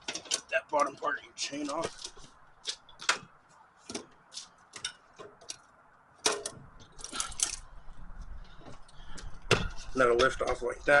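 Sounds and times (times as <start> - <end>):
chain links rattling: 6.9 - 7.7.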